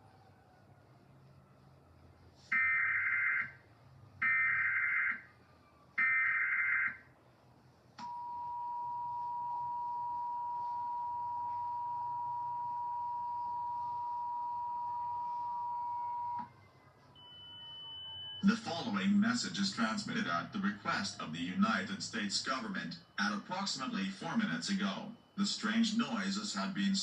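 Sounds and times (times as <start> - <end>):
steady attention tone: 8.0 - 16.4, 17.1 - 27.0.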